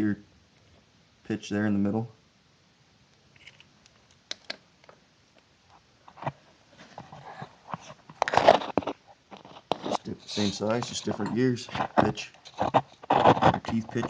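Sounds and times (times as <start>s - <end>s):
rustling scrape: 6.1s - 14.0s
crunching rustle: 6.2s - 14.0s.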